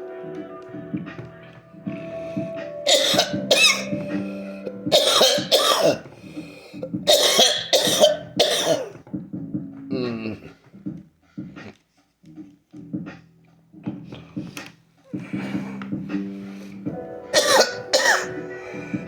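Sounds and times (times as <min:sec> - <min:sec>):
music: 0:00.0 - 0:19.0
person coughing harshly: 0:02.9 - 0:04.2, 0:04.9 - 0:06.2, 0:07.1 - 0:09.0, 0:17.4 - 0:18.4.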